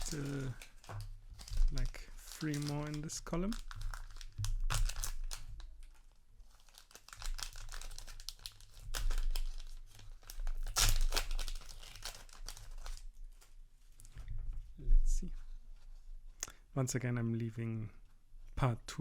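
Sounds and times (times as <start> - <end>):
wrapper tearing and crinkling: 0.0 - 14.1.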